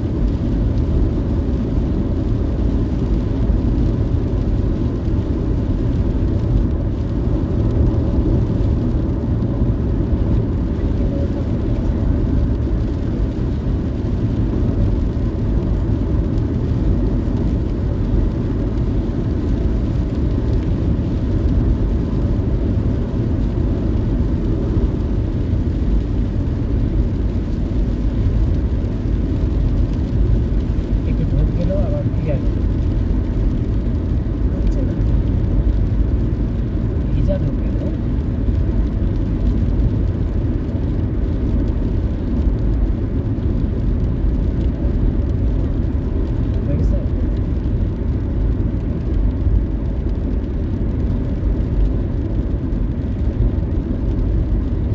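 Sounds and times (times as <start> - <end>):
car road noise rumble: 0.0 - 54.9.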